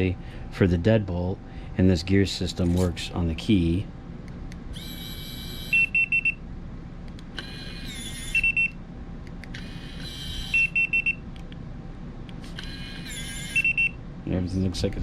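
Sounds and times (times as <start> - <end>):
door lock motor whirring: 4.7 - 6.3, 7.1 - 11.6, 12.3 - 13.9.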